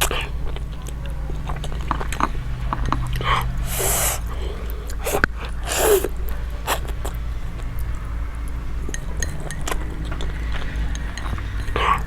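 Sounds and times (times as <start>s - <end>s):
utensil clicking against dish: 0.0s - 3.6s, 6.2s - 12.0s
mouth noise: 0.0s - 7.2s
steady low hum: 0.0s - 12.0s.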